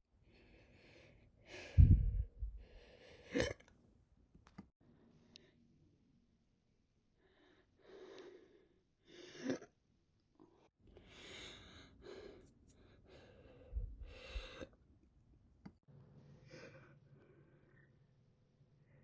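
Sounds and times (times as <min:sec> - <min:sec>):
woman breathing quietly: 0:00.2 - 0:03.3, 0:10.9 - 0:14.8.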